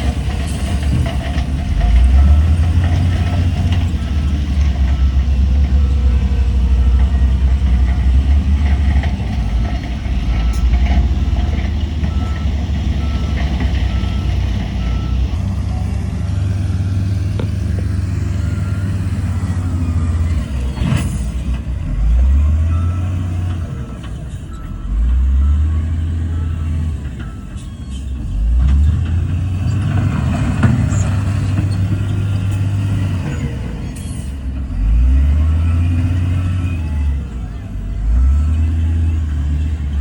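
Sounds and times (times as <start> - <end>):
heavy diesel engine revving: 0.0 - 40.0
faint reversing beeper: 9.5 - 28.5, 33.2 - 40.0.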